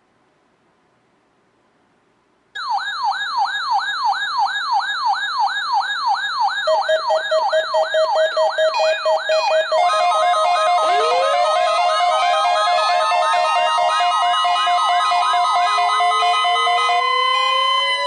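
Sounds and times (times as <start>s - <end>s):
siren sweeping down: 2.7s - 18.0s
rapid electronic beeping: 5.8s - 18.0s.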